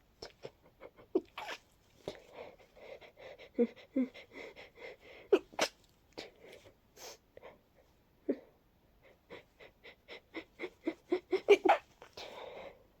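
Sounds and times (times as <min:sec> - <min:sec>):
person sneezing congested: 0:05.3 - 0:05.8.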